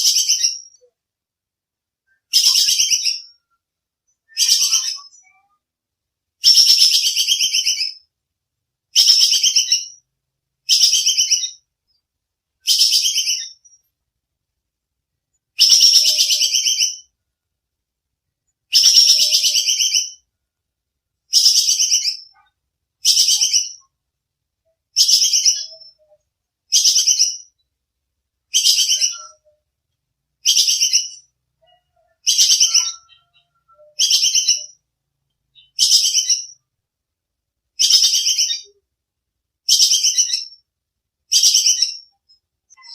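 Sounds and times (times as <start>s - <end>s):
squirrel chattering: 15.6s - 17.0s, 18.7s - 20.2s.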